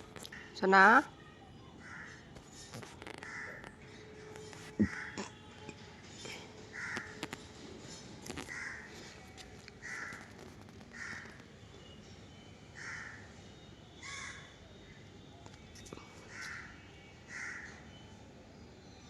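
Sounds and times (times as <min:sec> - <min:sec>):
crow cawing: 0:01.8 - 0:02.3, 0:03.1 - 0:03.7, 0:04.8 - 0:05.4, 0:06.7 - 0:07.3, 0:08.4 - 0:09.0, 0:09.8 - 0:11.4, 0:12.8 - 0:13.2, 0:16.3 - 0:17.8.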